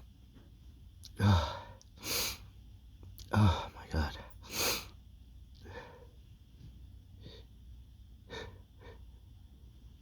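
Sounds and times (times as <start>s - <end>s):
man breathing noisily: 8.2s - 9.1s.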